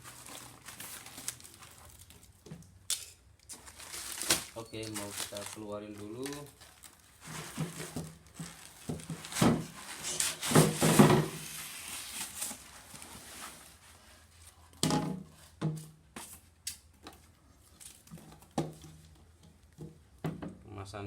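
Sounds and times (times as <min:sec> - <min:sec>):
box scraping and rustling: 0:07.2 - 0:14.3.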